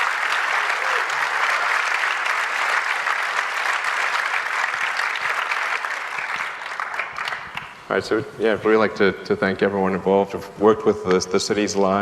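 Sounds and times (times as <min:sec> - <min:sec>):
audience applauding: 0:00.0 - 0:07.9.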